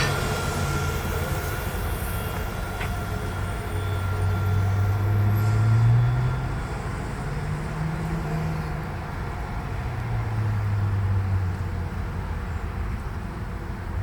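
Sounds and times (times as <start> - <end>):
tram motor humming: 0.0 - 9.8
rumble of tram wheels: 0.0 - 14.0
street noise: 0.0 - 14.0.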